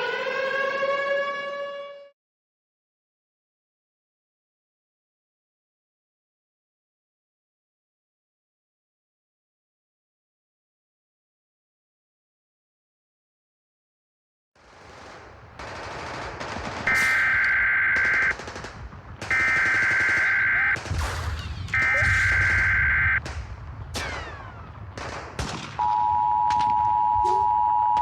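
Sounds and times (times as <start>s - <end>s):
gunfire sound effects: 14.6s - 27.4s
two-tone attention signal: 16.9s - 18.3s, 19.3s - 20.8s, 21.8s - 23.2s, 25.9s - 28.0s
buzzy data bursts: 16.9s - 18.4s, 19.3s - 20.8s, 21.8s - 23.2s.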